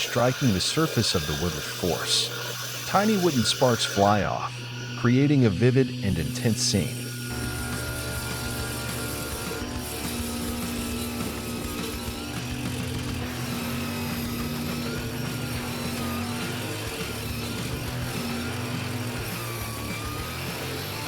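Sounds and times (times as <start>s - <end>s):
motor-driven machine running: 0.0s - 21.0s
background music: 3.0s - 21.0s.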